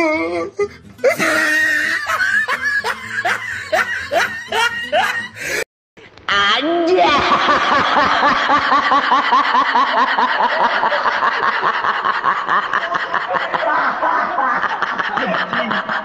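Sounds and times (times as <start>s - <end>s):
high-pitched snickering laughter: 1.0s - 5.4s.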